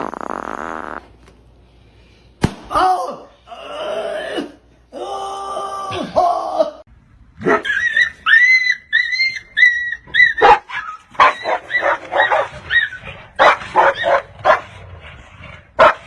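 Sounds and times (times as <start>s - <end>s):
dog yipping and barking: 7.4s - 14.6s.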